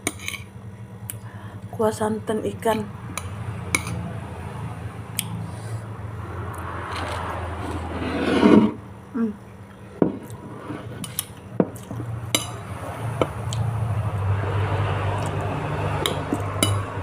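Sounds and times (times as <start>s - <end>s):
low steady hum: 0.0s - 17.0s
metal spoon clinking on dish: 12.3s - 12.6s, 16.0s - 16.9s.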